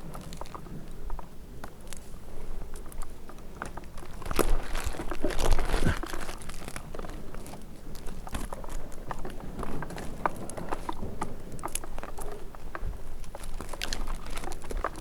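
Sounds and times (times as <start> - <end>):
dry twigs crunching and breaking: 3.7 - 8.5
bark scraping against gear: 4.5 - 6.4.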